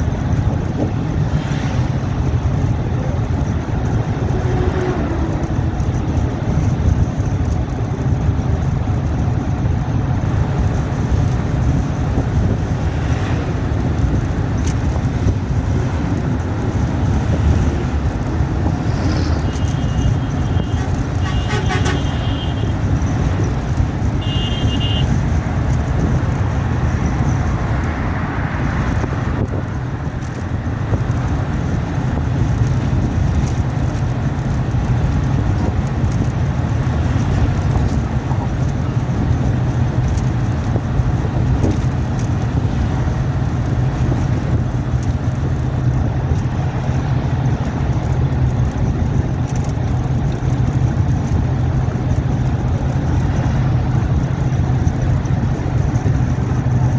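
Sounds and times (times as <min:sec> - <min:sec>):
road noise: 0:00.0 - 0:56.9
vehicle engine rumble: 0:00.0 - 0:56.9
car horn toot: 0:19.4 - 0:22.8, 0:24.2 - 0:25.2.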